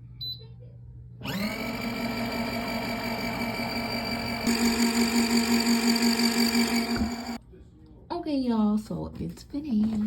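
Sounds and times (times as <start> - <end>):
washing machine motor whine: 1.2 - 7.4.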